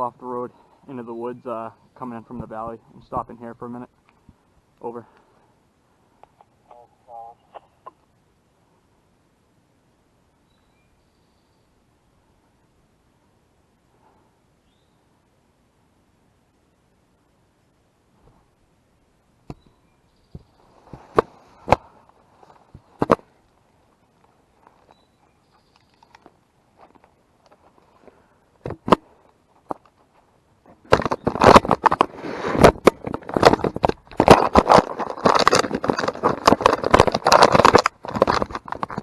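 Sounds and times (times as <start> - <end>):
dry leaves and brush crackling: 29.1 - 39.0.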